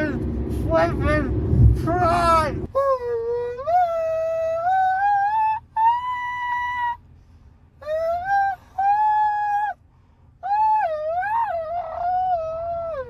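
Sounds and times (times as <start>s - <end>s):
person singing falsetto notes: 2.7s - 7.0s, 7.8s - 9.8s, 10.4s - 13.0s.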